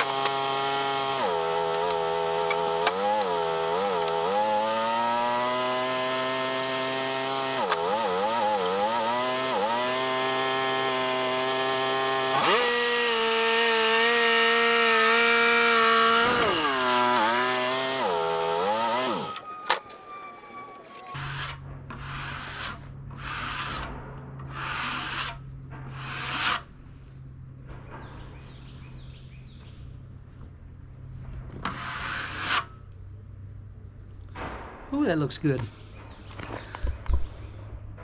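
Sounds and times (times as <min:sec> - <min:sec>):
band sawmill cutting log: 0:00.0 - 0:23.9, 0:24.5 - 0:26.6, 0:31.6 - 0:32.7.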